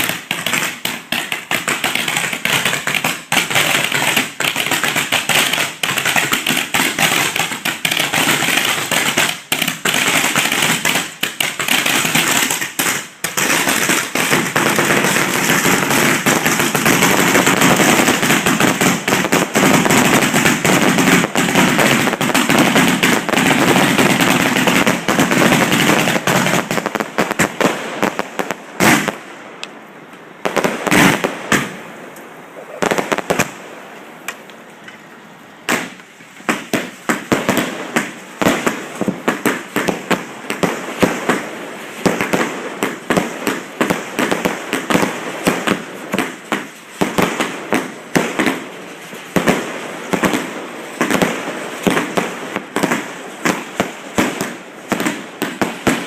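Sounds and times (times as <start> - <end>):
fireworks bangs and crackling: 0.0 - 56.0.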